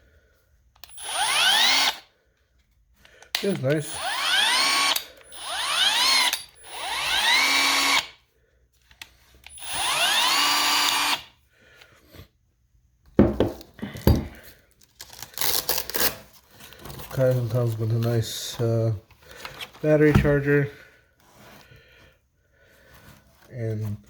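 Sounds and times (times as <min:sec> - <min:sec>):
drill motor whine: 0:00.8 - 0:02.1, 0:03.7 - 0:08.1, 0:09.5 - 0:11.3
knocks and clatter of handling: 0:13.1 - 0:14.5.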